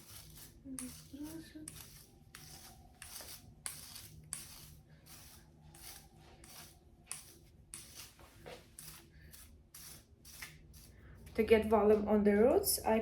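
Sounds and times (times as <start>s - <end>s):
hairbrush swishing through hair: 0.0s - 12.0s.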